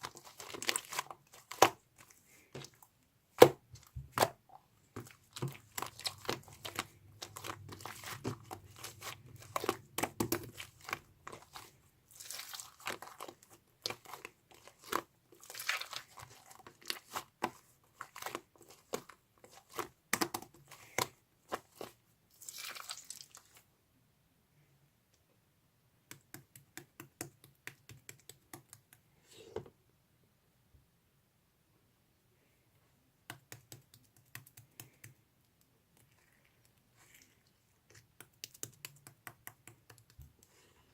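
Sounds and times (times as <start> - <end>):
crinkling handling noise: 0.0 - 23.7.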